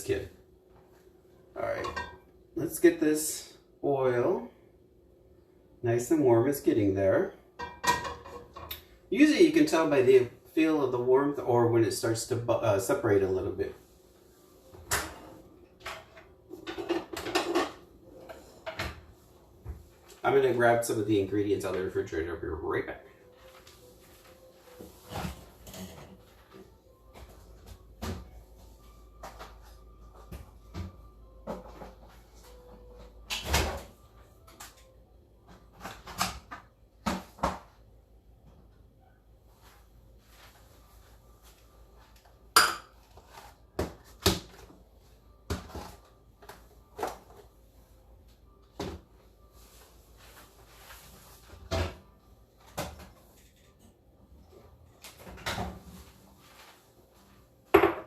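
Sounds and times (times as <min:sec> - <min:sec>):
kitchen knocks and clunks: 0:07.6 - 0:08.7, 0:15.8 - 0:17.8.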